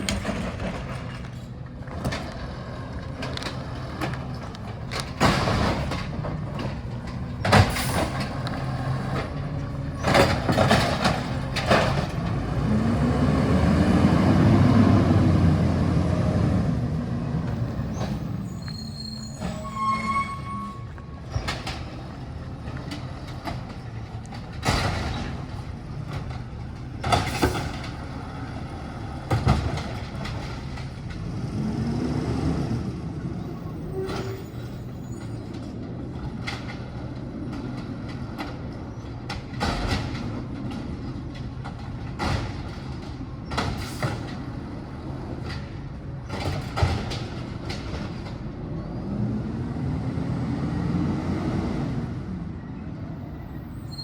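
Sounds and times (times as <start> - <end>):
diesel truck engine revving: 0.0 - 19.8, 21.0 - 35.0, 35.8 - 53.9.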